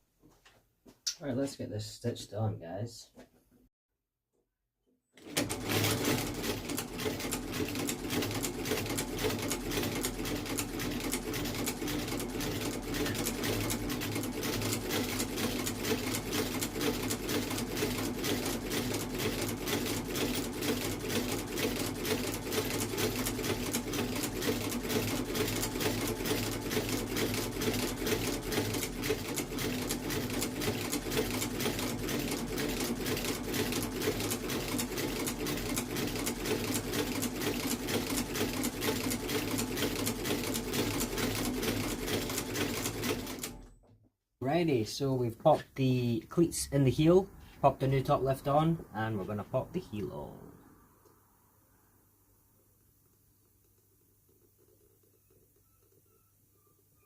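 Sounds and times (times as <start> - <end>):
sole-stitching machine stitching: 5.2 - 44.0.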